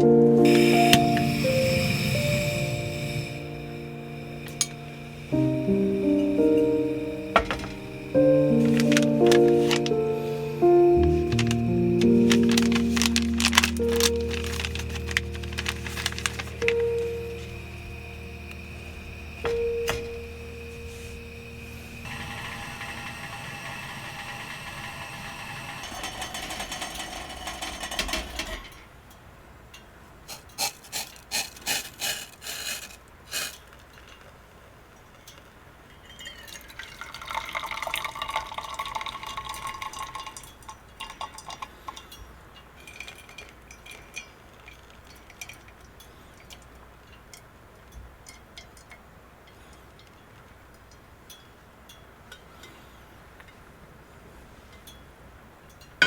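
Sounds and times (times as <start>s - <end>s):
dishes and utensils clinking: 0.5s - 18.3s, 19.4s - 22.0s
steady ringing tone: 14.2s - 28.1s
liquid being poured: 36.1s - 41.7s.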